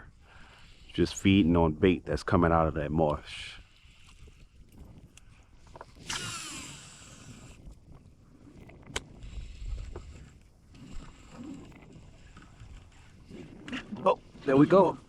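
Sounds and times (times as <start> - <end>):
fishing reel line whirring: 3.2 - 15.0
sharp reel click: 6.0 - 7.6.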